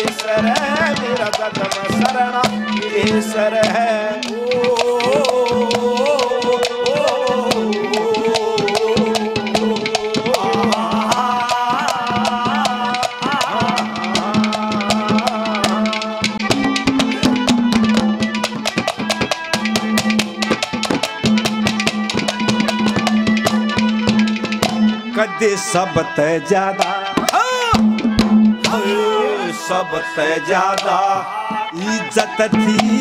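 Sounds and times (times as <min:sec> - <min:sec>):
hand drum playing fast rhythm: 0:00.0 - 0:25.4, 0:26.7 - 0:29.1, 0:32.5 - 0:33.0
wavering melody line: 0:12.3 - 0:20.4
held low note: 0:15.2 - 0:18.4.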